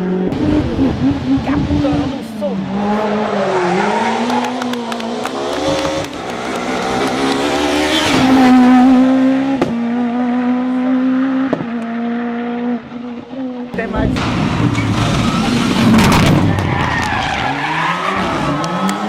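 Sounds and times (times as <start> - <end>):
rally car engine revving: 0.0 - 19.0.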